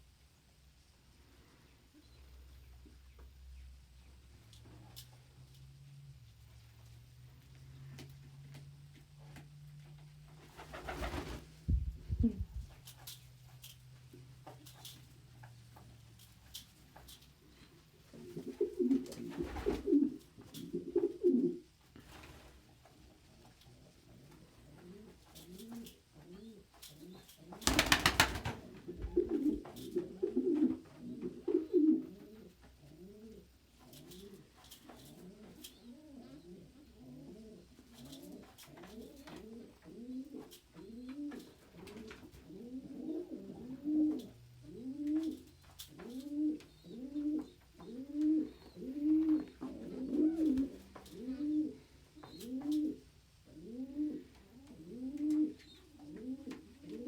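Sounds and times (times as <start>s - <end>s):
pigeons cooing: 18.1s - 21.7s, 23.3s - 57.0s.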